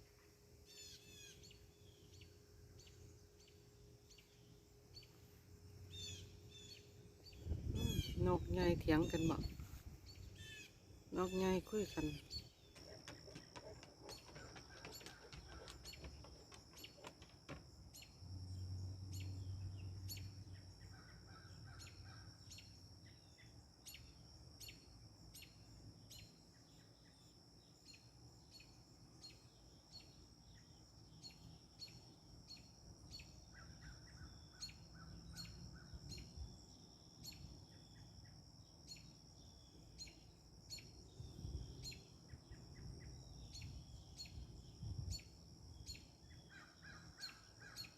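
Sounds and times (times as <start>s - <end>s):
birds chirping: 0.7s - 18.2s
lower bird calls: 5.9s - 17.2s
wind rumble on microphone: 7.2s - 10.4s, 41.1s - 45.3s.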